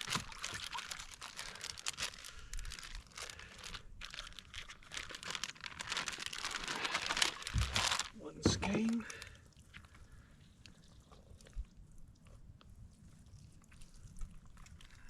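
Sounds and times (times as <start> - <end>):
plastic bag crinkling: 0.0 - 9.3.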